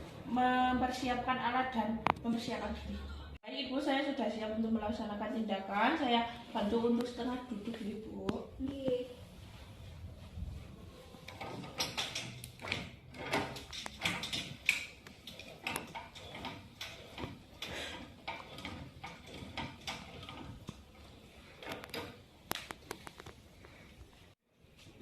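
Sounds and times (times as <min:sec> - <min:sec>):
bedding rustling: 0:08.2 - 0:22.4
objects knocking and clicking: 0:11.3 - 0:21.0.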